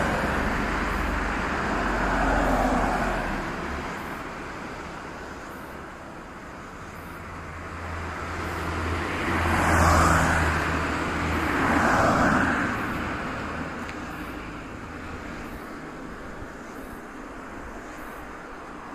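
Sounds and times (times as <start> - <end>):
vehicle passing close by: 0.0 - 4.0, 7.7 - 15.4.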